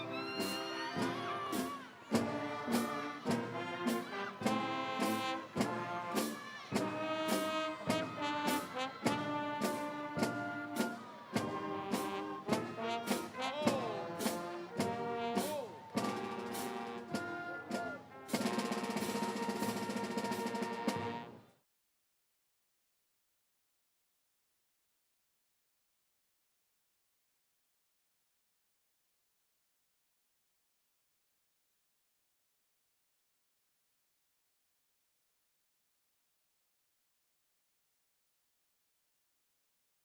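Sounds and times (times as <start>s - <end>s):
brass band music: 0.0s - 21.6s
steady drum beat: 0.1s - 21.2s.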